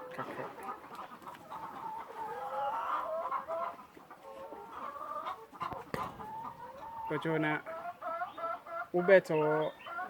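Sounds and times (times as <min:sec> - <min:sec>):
chickens clucking: 0:00.0 - 0:10.0.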